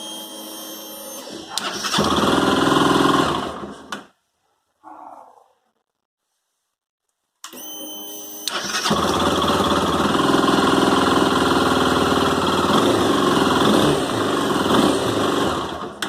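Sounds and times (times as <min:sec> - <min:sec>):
starter motor cranking: 0:01.5 - 0:03.8, 0:08.4 - 0:16.0
motorcycle engine running: 0:09.0 - 0:15.8.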